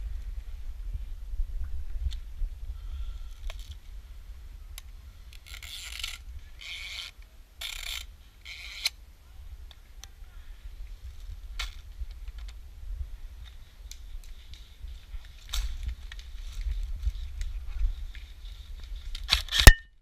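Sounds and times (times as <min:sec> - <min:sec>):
wind on microphone: 0:00.0 - 0:06.8, 0:08.7 - 0:19.7
camera handling rumble: 0:03.3 - 0:04.0, 0:04.7 - 0:09.0, 0:13.4 - 0:19.8.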